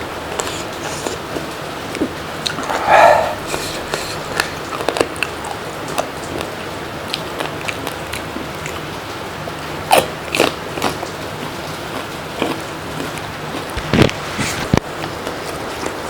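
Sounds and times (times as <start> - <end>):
wet mouth clicks: 2.5 - 4.5
sharp mouth sounds: 2.5 - 4.6.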